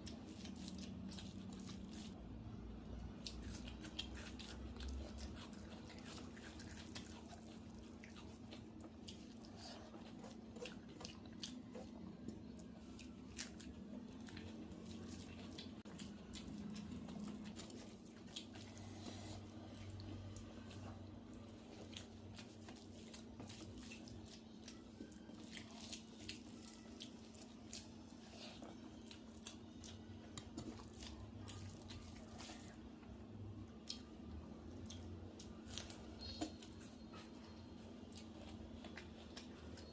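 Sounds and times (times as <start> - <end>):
faint steady hum: 0.0 - 39.9
chewing and mouth smacks: 3.1 - 32.8, 33.6 - 39.9.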